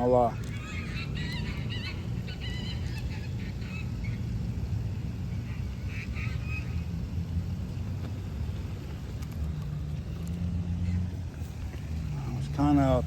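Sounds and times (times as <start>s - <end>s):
waterfowl calling: 0.0s - 4.5s, 5.3s - 7.0s
steady low rumble: 0.0s - 13.0s.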